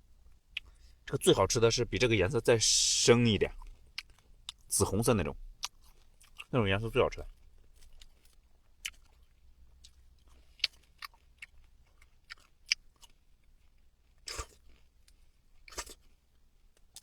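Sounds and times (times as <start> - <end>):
seeds being chewed: 5.6 - 17.0.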